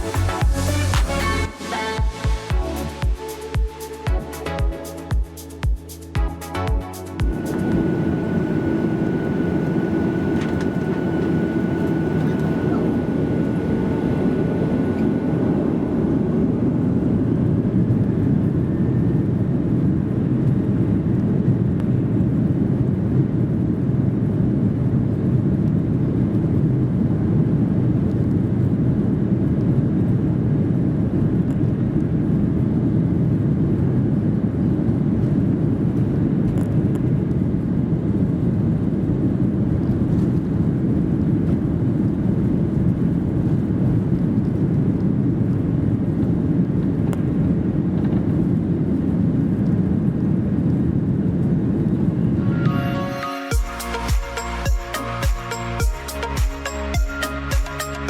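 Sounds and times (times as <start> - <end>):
high engine whine: 0.0 - 21.1, 51.4 - 58.0
jet engine roar in cabin: 7.2 - 53.5.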